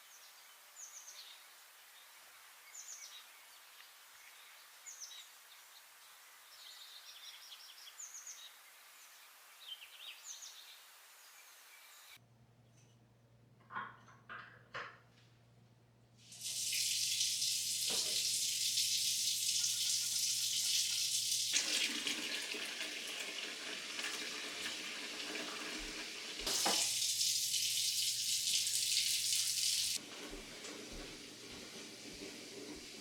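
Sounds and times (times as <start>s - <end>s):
water running from a tap: 16.2s - 33.0s.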